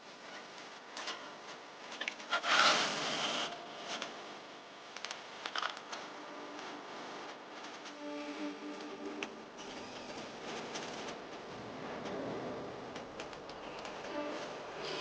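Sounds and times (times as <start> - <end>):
scattered clicks: 4.9 - 6.7, 12.9 - 14.2.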